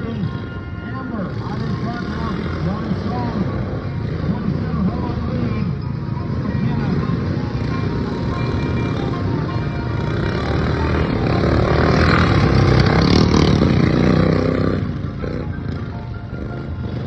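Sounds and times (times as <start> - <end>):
racing lawnmower engines: 0.0 - 17.0.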